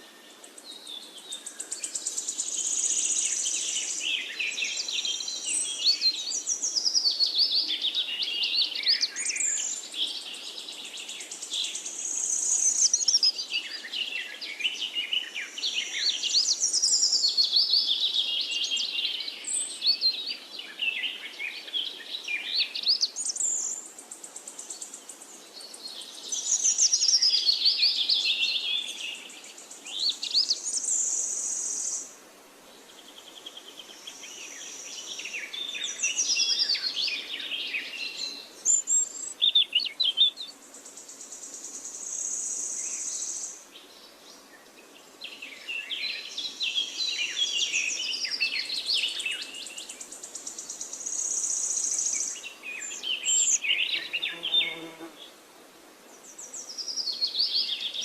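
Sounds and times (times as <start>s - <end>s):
songbird singing: 0.0s - 55.4s, 56.0s - 58.0s.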